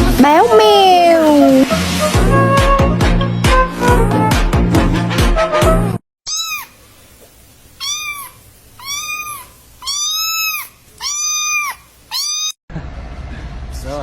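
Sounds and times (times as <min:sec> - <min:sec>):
music: 0:00.0 - 0:06.0
cat meowing: 0:06.3 - 0:06.8, 0:07.8 - 0:12.6.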